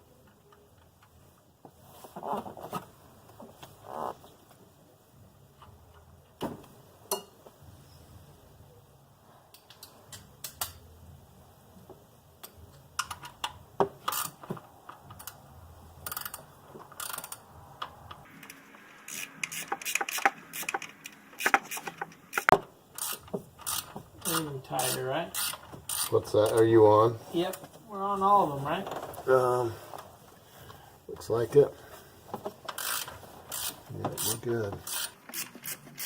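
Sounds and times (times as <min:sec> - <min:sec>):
ratchet wrench clicking: 0:12.4 - 0:14.4, 0:16.0 - 0:17.4, 0:18.4 - 0:26.6, 0:32.7 - 0:36.0.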